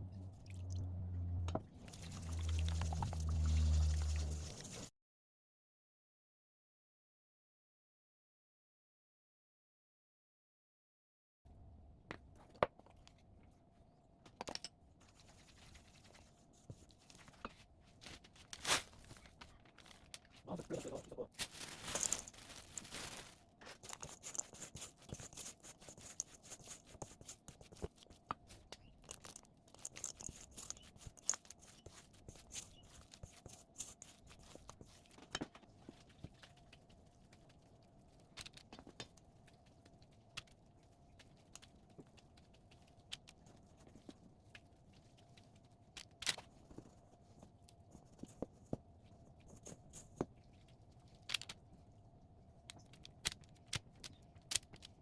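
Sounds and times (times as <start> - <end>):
faint steady hum: 0.0 - 4.9, 11.5 - 55.0.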